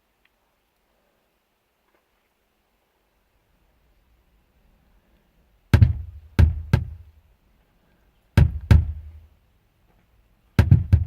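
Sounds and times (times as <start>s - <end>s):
speakers popping: 10.6s - 11.0s.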